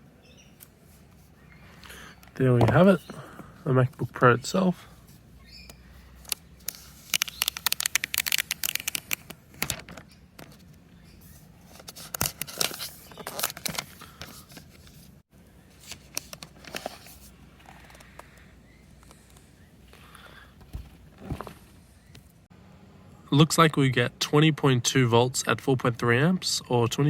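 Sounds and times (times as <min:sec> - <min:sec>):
wrapping crackling and tearing: 0:06.6 - 0:10.0, 0:11.9 - 0:14.6.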